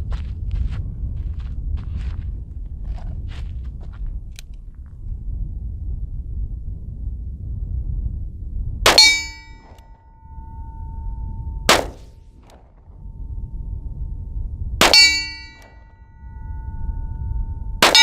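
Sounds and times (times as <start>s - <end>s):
revolver gunshots: 8.9s - 9.8s, 11.7s - 12.6s, 14.8s - 15.7s, 17.8s - 18.0s
steel target ringing clang: 8.9s - 18.0s.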